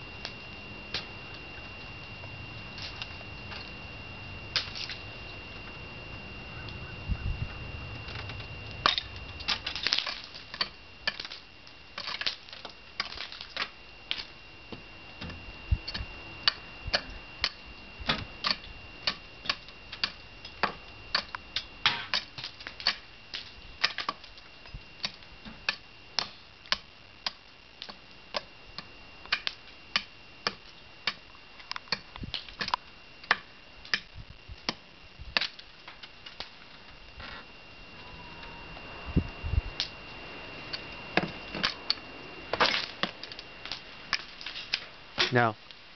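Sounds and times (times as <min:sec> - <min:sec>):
faint high whine: 0:00.0 - 0:45.9
tool chipping icicles: 0:08.1 - 0:36.5.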